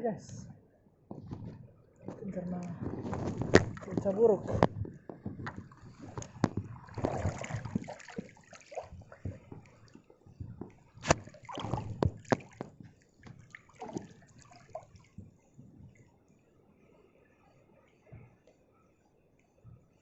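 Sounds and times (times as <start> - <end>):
seawater splashing and sloshing: 2.2 - 15.3.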